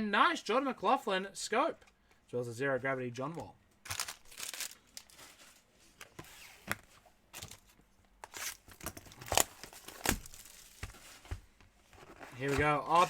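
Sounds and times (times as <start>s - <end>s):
cards and packaging clicking and rustling: 3.8s - 13.0s.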